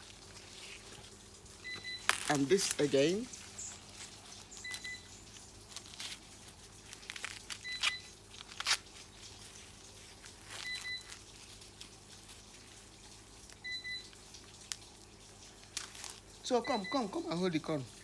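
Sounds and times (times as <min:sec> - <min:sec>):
corn leaves rustling: 0:00.0 - 0:18.0
corn ears snapping off stalks: 0:02.0 - 0:02.9.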